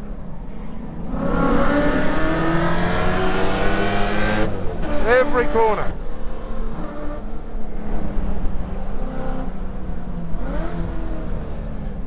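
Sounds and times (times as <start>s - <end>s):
car engine revving hard: 1.1s - 6.0s, 10.4s - 11.9s.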